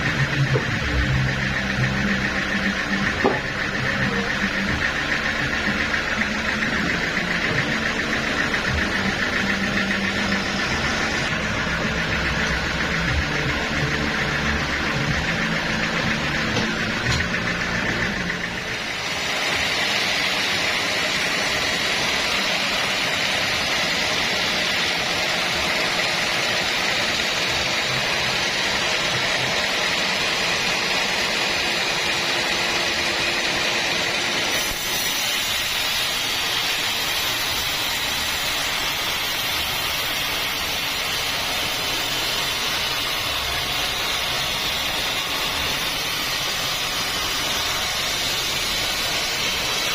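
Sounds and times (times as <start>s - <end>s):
band saw cutting log: 0.0s - 49.9s.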